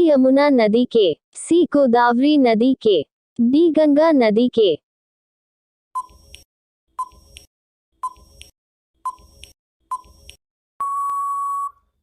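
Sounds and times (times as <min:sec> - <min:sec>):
short timer beeps: 0:09.1 - 0:11.8
long steady beep: 0:10.8 - 0:11.8.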